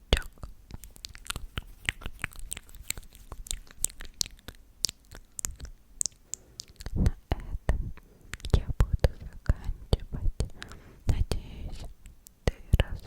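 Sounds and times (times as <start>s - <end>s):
wet mouth clicks and pops: 0.1s - 9.3s.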